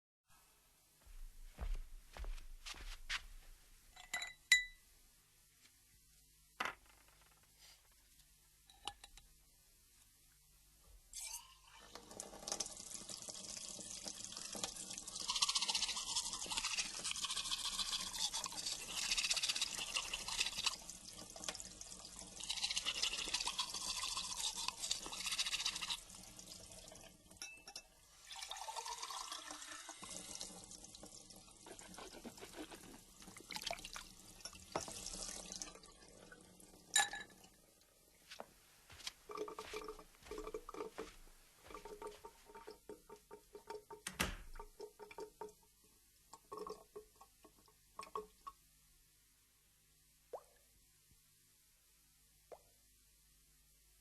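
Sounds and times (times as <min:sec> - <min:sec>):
water dripping and splashing: 0:38.4 - 0:45.6.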